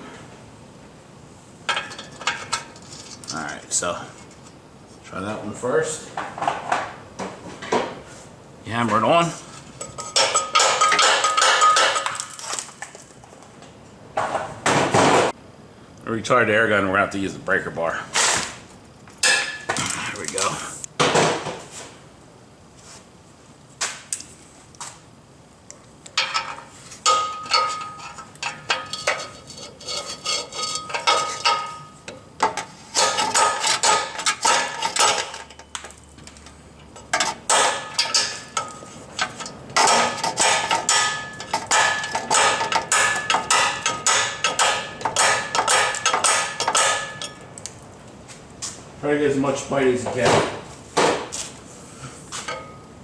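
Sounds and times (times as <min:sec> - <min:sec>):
hammer striking metal socket: 0:37.0 - 0:47.4.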